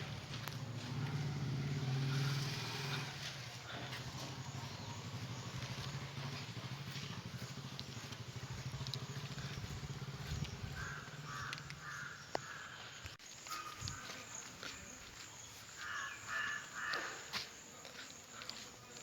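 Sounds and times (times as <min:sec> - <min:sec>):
engine humming: 0:00.0 - 0:13.2
crow cawing: 0:08.7 - 0:14.3, 0:15.7 - 0:17.5.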